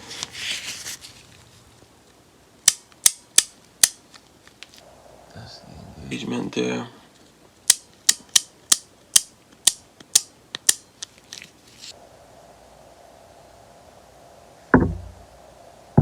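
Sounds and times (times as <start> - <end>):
knock: 14.8 - 15.2.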